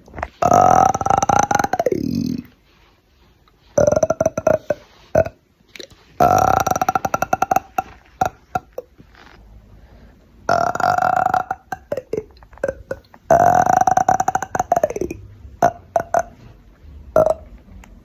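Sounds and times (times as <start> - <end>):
person burping: 0.4 - 2.5, 3.8 - 9.0, 10.5 - 16.6, 17.2 - 17.6.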